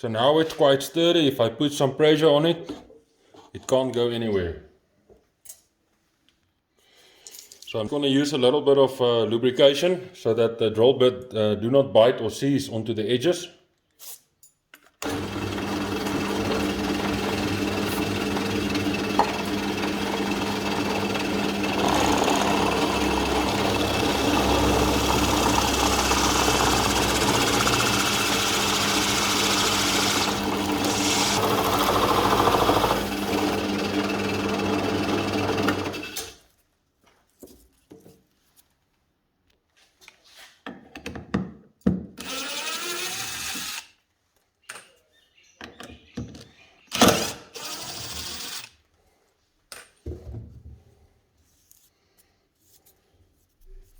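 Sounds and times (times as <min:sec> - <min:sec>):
drill bit boring through acrylic: 0:15.0 - 0:36.4, 0:42.2 - 0:43.8, 0:47.0 - 0:48.7
drill press motor running: 0:15.0 - 0:36.4.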